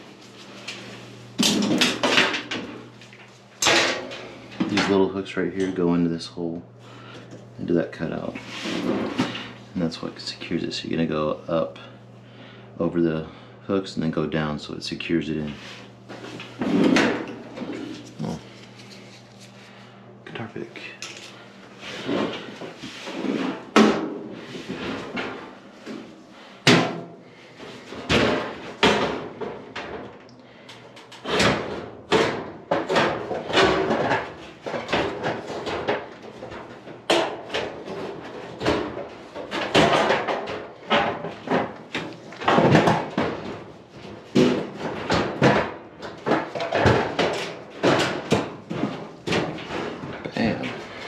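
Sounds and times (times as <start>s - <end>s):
dryer cabinet parts clanking: 0.0s - 6.3s, 15.3s - 19.6s, 20.3s - 51.0s.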